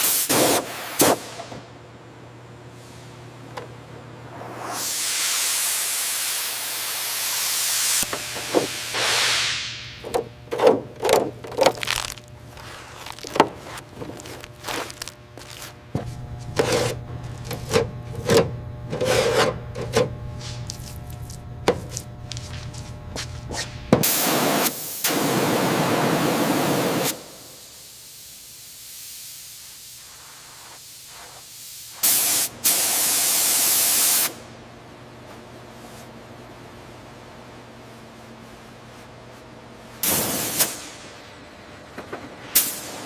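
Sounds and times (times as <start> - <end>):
hiss: 0.0 - 1.5, 4.4 - 9.9, 24.0 - 34.4, 40.0 - 41.1, 42.6 - 43.0
steady low hum: 1.2 - 4.9, 6.7 - 26.5.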